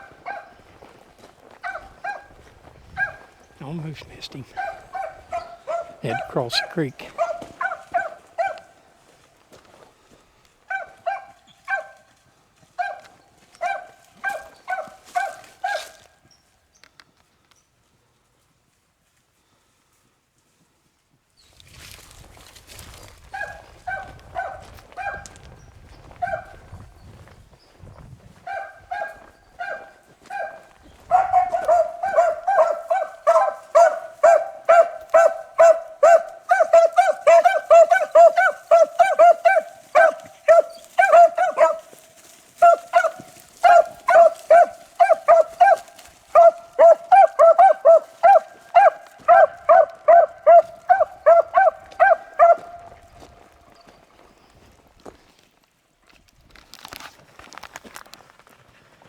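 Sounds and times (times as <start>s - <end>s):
dogs baying and barking: 0.0s - 9.0s, 10.6s - 16.2s, 23.2s - 26.9s, 28.4s - 53.9s.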